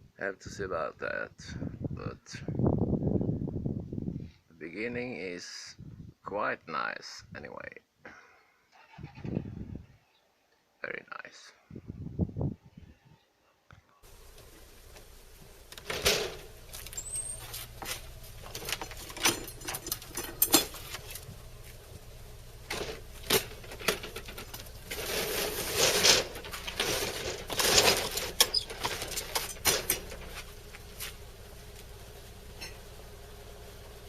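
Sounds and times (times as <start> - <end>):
objects being handled: 14.1 - 22.0, 22.6 - 31.2.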